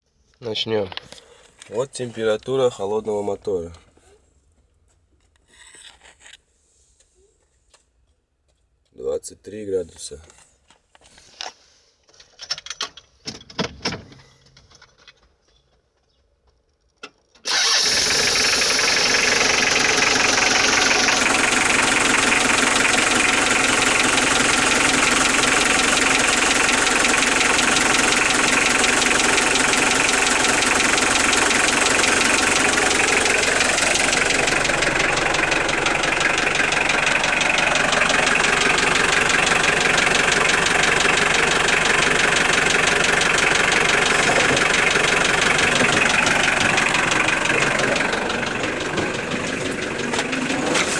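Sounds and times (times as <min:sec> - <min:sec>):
engine cranking: 0:17.5 - 0:50.9
engine idling with rhythmic knock: 0:17.5 - 0:50.9.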